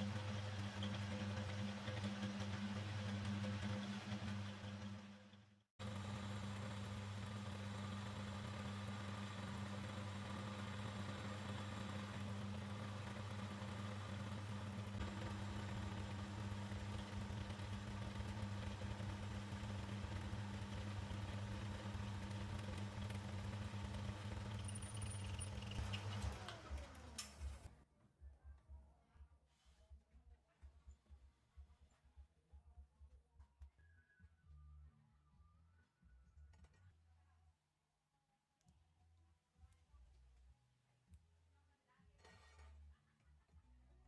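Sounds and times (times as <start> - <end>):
electric motor humming and winding down: 5.8 - 27.7.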